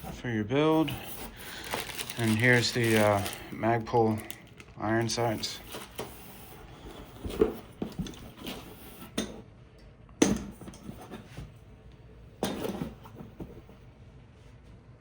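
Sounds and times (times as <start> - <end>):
packaging rustling: 0.7 - 8.6.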